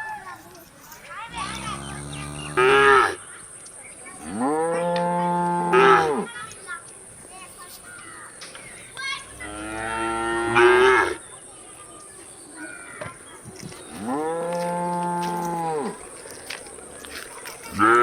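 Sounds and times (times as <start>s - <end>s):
cows mooing: 1.3s - 3.2s, 9.3s - 11.2s, 14.0s - 16.0s.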